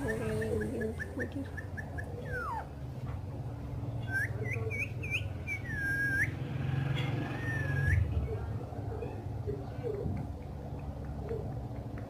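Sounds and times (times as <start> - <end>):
parrot whistling: 0.8 - 2.7, 4.1 - 6.4, 7.4 - 8.1.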